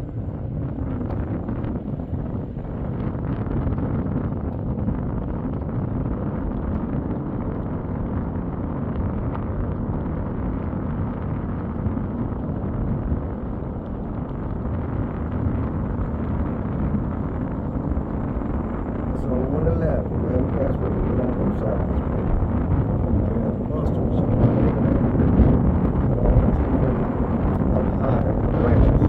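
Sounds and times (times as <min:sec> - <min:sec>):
vehicle driving rumble: 0:12.0 - 0:29.0.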